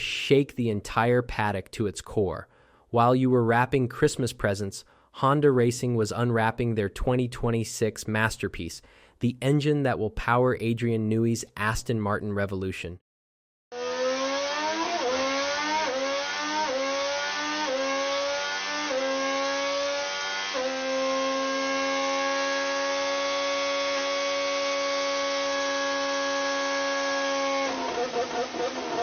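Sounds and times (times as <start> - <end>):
racing car engine at high revs: 13.8 - 29.0.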